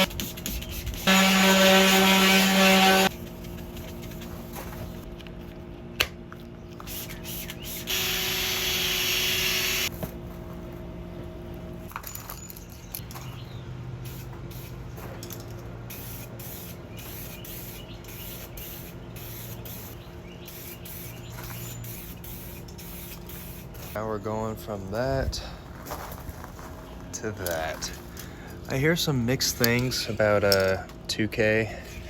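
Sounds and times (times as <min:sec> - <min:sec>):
faint steady hum: 0:15.2 - 0:32.0
aerosol can spraying: 0:15.9 - 0:23.9.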